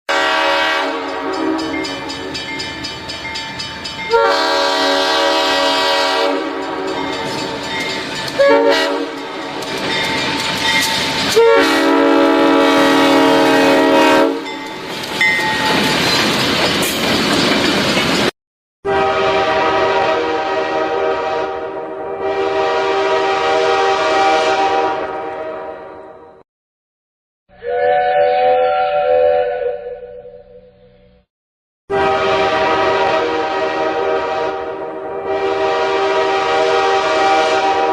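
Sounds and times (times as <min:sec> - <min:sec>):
train horn blasts: 0:00.1 - 0:02.2, 0:04.1 - 0:07.4, 0:08.3 - 0:09.6, 0:11.3 - 0:14.5, 0:18.8 - 0:26.4, 0:27.6 - 0:30.7, 0:31.9 - 0:37.9.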